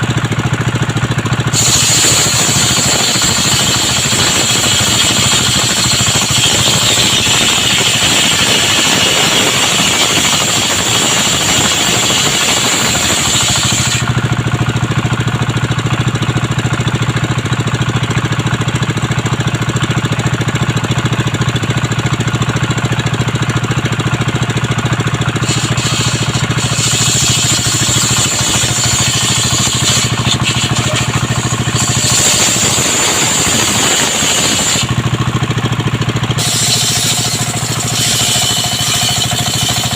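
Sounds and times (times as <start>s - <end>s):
circular saw cutting whine: 0.0s - 19.6s, 20.2s - 39.9s
engine running: 0.0s - 39.9s
saw blade spinning: 0.5s - 14.7s, 24.7s - 39.9s.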